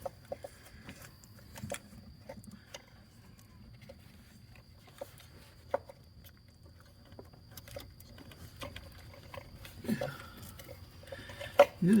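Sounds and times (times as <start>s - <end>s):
hands and tools clicking: 0.0s - 12.0s.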